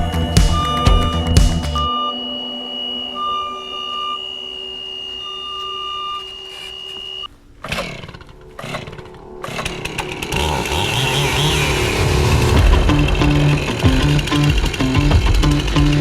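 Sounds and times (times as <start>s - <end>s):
electronic beeping: 0.0s - 7.3s
steady electronic tones: 0.0s - 16.0s
chainsaw revving: 7.7s - 11.7s.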